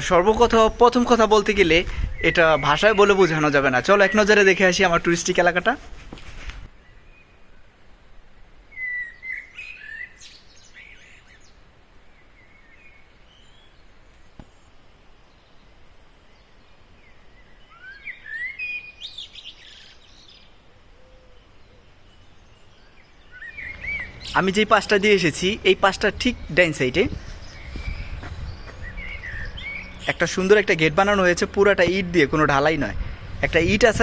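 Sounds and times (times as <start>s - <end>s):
birds chirping: 0.0s - 34.0s.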